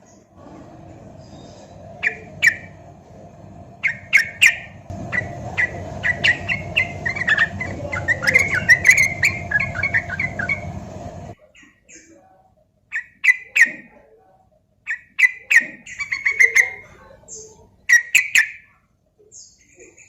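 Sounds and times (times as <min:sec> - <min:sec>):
steady background hum: 0:00.0 - 0:20.0
bird chirping: 0:00.9 - 0:02.9, 0:03.8 - 0:12.2, 0:14.9 - 0:20.0.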